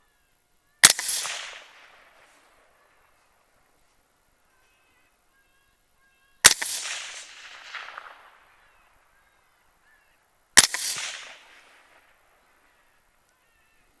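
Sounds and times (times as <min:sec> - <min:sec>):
gunshots with rolling echo: 0:00.8 - 0:03.5, 0:06.4 - 0:09.8, 0:10.6 - 0:13.2.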